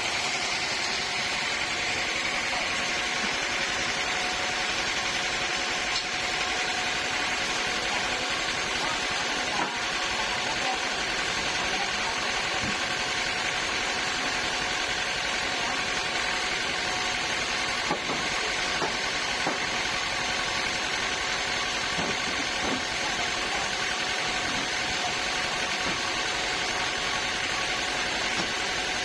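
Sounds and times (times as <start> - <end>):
sawmill machinery hum: 0.0 - 29.0.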